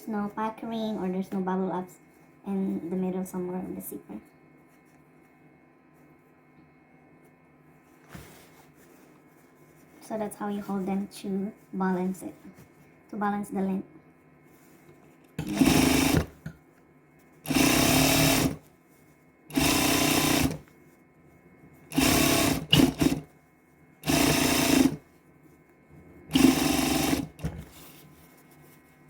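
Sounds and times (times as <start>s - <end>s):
electric sewing machine running: 15.4s - 16.4s, 17.4s - 18.6s, 19.5s - 20.6s, 21.9s - 23.3s, 24.0s - 25.0s, 26.3s - 27.6s.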